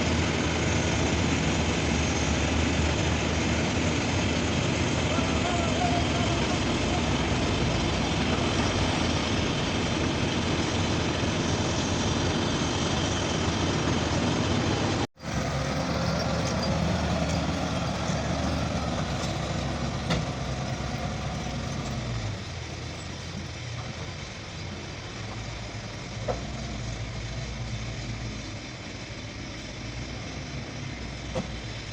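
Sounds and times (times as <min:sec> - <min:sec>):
heavy diesel machinery running: 0:00.0 - 0:31.9.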